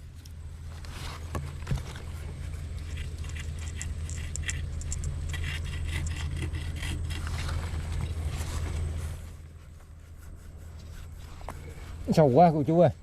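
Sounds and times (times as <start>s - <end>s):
steady low rumble: 0.0s - 13.0s
scraping and rattling clicks: 2.7s - 8.2s.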